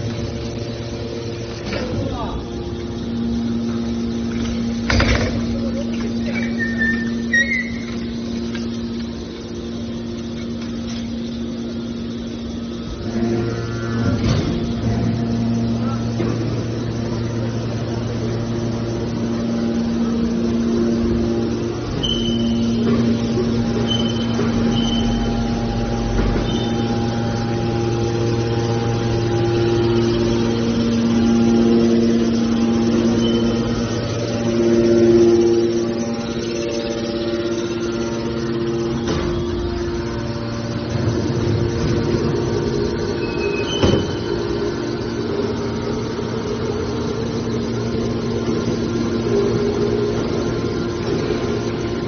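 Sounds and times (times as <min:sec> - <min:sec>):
hydraulic power unit hum: 0:00.0 - 0:52.0
brief high squeal: 0:06.4 - 0:07.9, 0:22.0 - 0:22.6.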